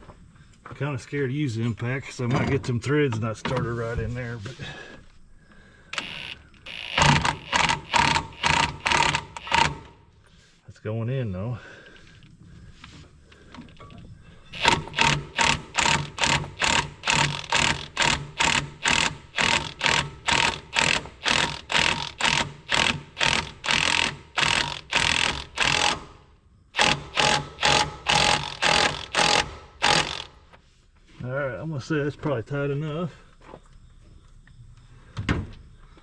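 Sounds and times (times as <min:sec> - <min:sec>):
impact wrench bursts: 0:05.9 - 0:10.0, 0:14.5 - 0:30.5.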